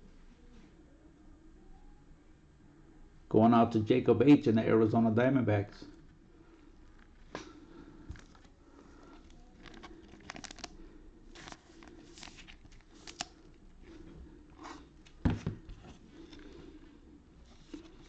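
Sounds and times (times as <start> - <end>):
card packaging rustling and crinkling: 8.1 - 16.7, 17.4 - 18.0.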